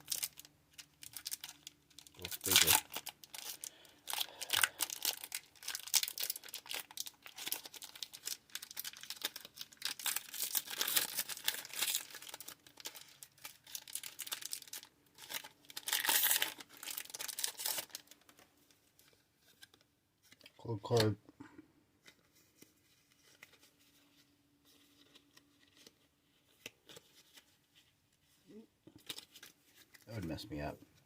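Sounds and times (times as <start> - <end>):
foil wrapper crinkling and tearing: 0.0 - 21.1, 29.0 - 30.0.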